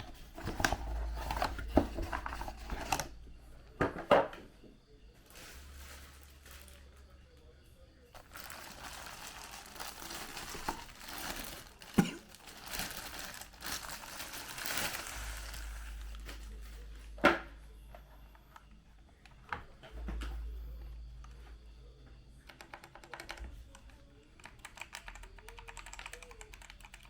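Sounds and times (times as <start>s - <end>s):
crinkling handling noise: 0.0s - 4.4s, 5.1s - 7.5s, 8.1s - 21.6s.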